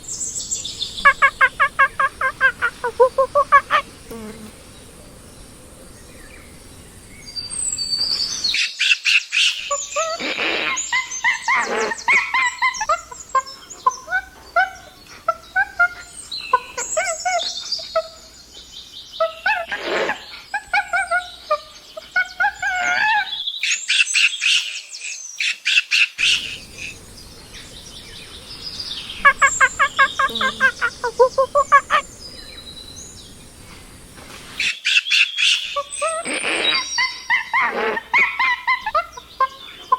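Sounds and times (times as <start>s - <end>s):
chimpanzees hooting and screaming: 1.0s - 3.9s, 9.6s - 18.3s, 19.2s - 23.4s, 29.2s - 32.1s, 35.4s - 39.9s.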